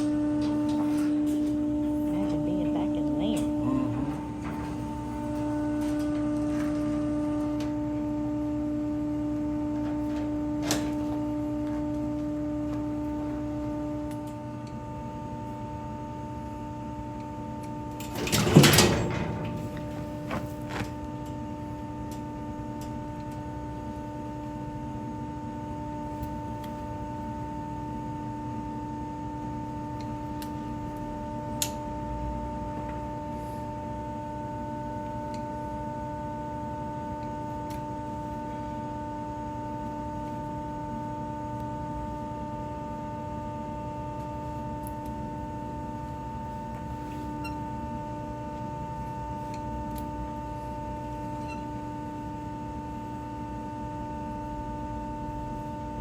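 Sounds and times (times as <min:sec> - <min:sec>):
steady machine hum: 0:00.0 - 0:56.0.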